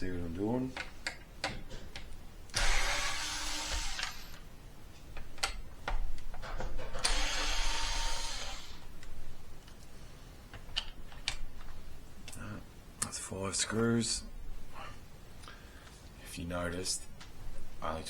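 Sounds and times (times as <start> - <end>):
small clicks and handling knocks: 0.7 - 2.2, 5.0 - 7.0, 10.5 - 12.4
power drill unscrewing screws: 2.5 - 4.4, 6.9 - 8.8.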